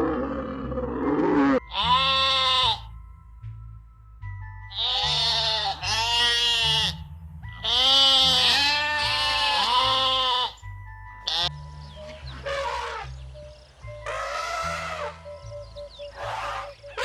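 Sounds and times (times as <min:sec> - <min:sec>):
livestock bleating: 0:01.4 - 0:02.9, 0:04.7 - 0:10.6, 0:11.2 - 0:11.6, 0:14.0 - 0:15.2.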